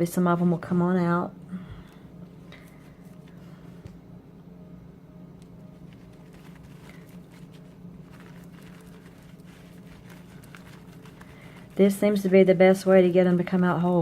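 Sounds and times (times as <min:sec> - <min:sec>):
low steady hum: 0:00.0 - 0:14.0
seeds clicking and pattering: 0:05.4 - 0:14.0.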